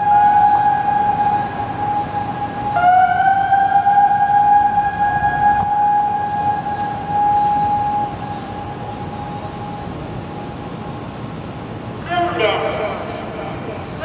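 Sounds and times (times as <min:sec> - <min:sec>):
second siren tone rising: 0:00.0 - 0:10.7
warning siren steady tone: 0:00.0 - 0:10.9.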